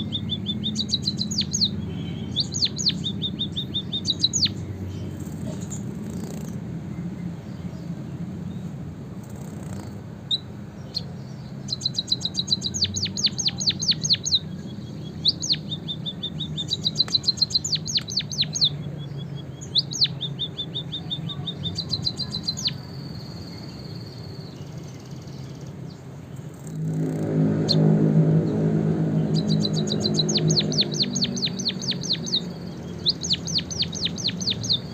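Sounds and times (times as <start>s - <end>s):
bird singing rapid trills: 0.0s - 34.9s
low hum: 25.7s - 34.9s.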